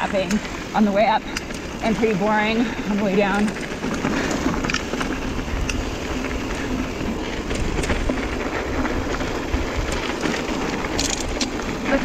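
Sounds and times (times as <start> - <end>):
bike rattling: 0.0 - 12.0
tyres rumbling on dirt trail: 0.0 - 12.0
wind on microphone: 4.0 - 12.0.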